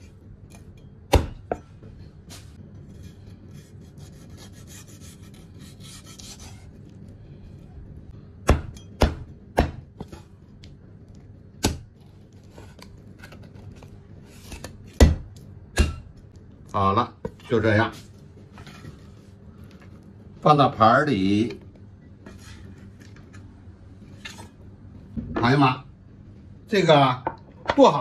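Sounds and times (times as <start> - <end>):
soft scraping and rubbing: 17.5 - 20.1, 22.2 - 24.6.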